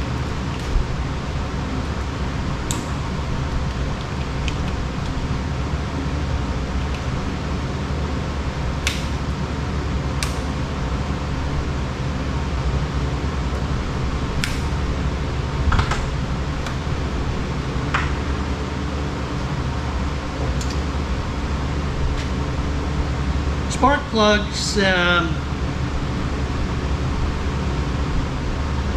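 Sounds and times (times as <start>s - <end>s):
mechanical drone: 0.0s - 28.9s
snips clicking on metal: 10.2s - 10.5s.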